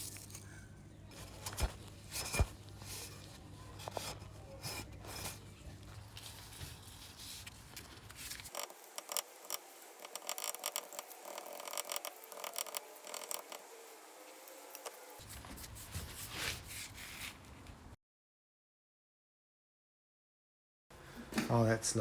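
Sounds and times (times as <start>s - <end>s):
scraping and rubbing: 1.1s - 17.4s.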